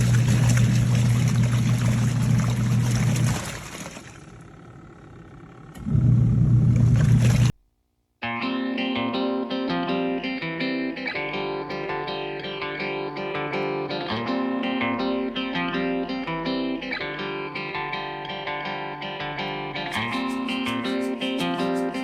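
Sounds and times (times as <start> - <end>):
plucked guitar music: 8.2 - 22.0.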